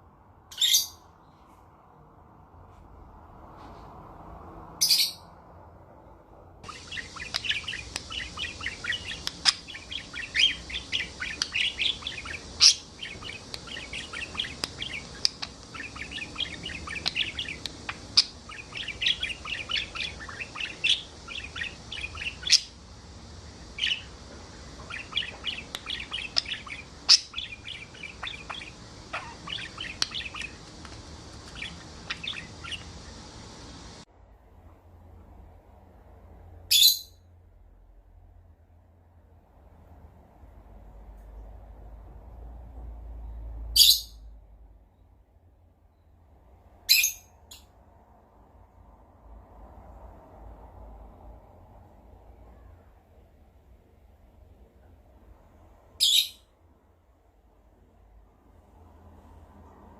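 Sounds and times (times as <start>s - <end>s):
shrill parrot calls: 0.5s - 1.0s, 4.8s - 5.3s, 6.7s - 22.8s, 24.8s - 30.6s, 56.0s - 56.4s
parrots chirping and chattering: 0.5s - 1.1s, 4.7s - 5.3s, 6.6s - 34.0s, 36.7s - 37.1s, 43.7s - 44.2s, 46.8s - 47.6s, 55.9s - 56.4s.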